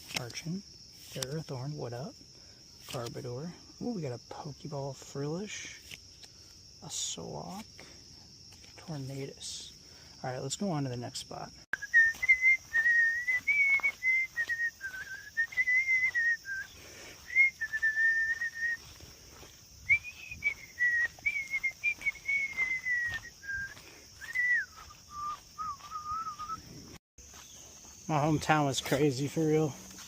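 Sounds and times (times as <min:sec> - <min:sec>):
person whistling a tune: 0:11.7 - 0:19.0, 0:19.9 - 0:26.6.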